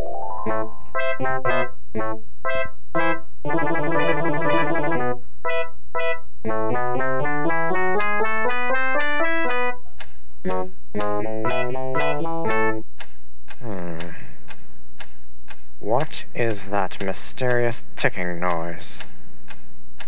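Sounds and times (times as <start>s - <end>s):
piano music with quick runs: 0.0s - 1.7s, 2.4s - 9.8s, 10.5s - 12.8s.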